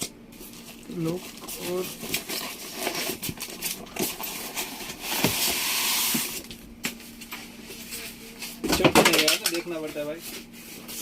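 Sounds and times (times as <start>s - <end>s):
packaging rustling: 0.4s - 6.6s.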